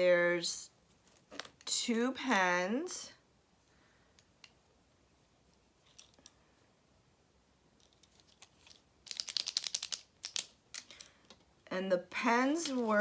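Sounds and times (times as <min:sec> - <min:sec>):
light clicks from handling pens: 0:04.1 - 0:04.6, 0:05.4 - 0:06.4, 0:07.8 - 0:11.5.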